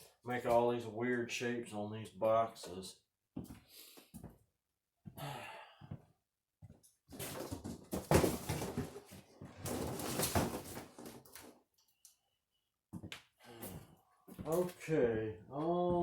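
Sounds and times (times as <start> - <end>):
cardboard rustling and scraping: 7.1 - 11.5.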